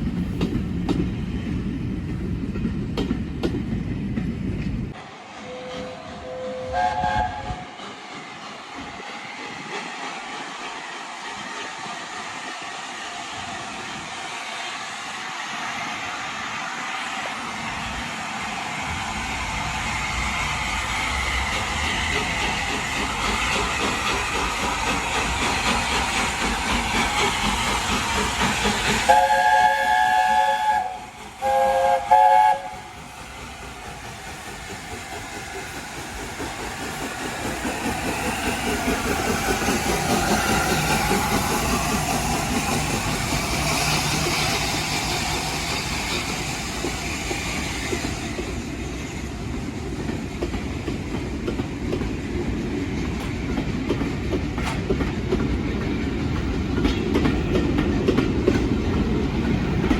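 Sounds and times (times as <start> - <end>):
train hiss and running noise: 0.0 - 59.9
steam locomotive whistle: 5.4 - 7.8, 29.0 - 33.1.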